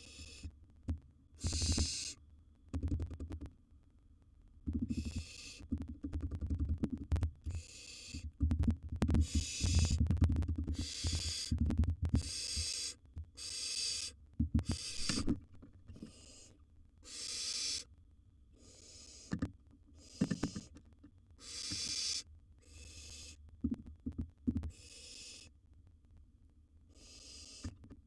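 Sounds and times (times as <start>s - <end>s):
owl nestlings rasping hiss: 0.0s - 0.5s, 1.4s - 2.2s, 4.8s - 5.7s, 7.5s - 8.2s, 9.2s - 10.0s, 10.7s - 11.6s, 12.2s - 15.3s, 16.0s - 17.9s, 18.6s - 20.8s, 21.4s - 23.4s, 24.7s - 25.5s, 26.9s - 27.8s.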